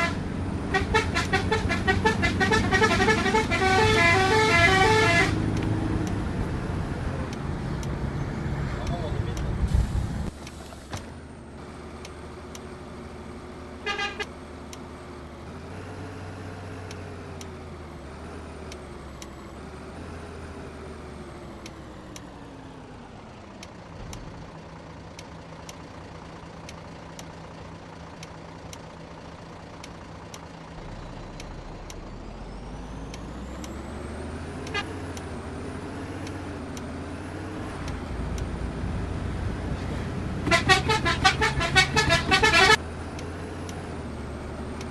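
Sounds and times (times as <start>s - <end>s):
multi-tone bus horn: 0.0s - 5.6s, 13.8s - 14.4s, 34.6s - 35.0s, 40.2s - 42.8s
heavy vehicle engine running: 0.0s - 44.9s
brief horn toot: 40.4s - 42.8s.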